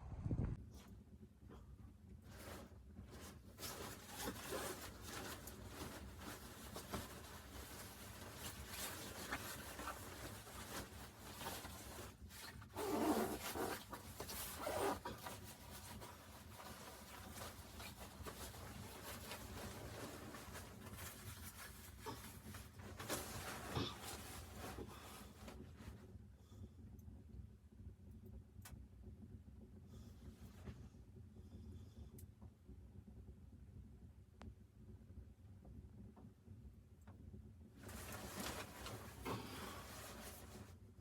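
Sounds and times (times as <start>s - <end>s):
rustling and scraping: 2.2s - 26.1s, 37.8s - 41.0s.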